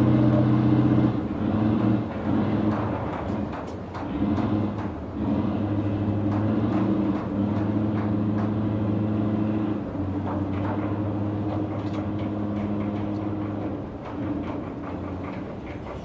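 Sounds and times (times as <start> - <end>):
machinery low drone: 0.0 - 3.2
faint clanks and ticks: 1.8 - 16.0.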